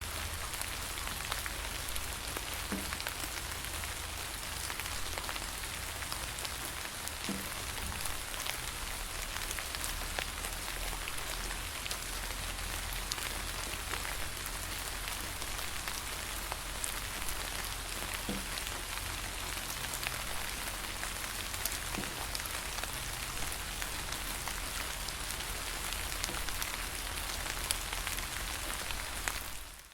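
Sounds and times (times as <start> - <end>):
rain pattering on leaves: 0.0 - 29.9.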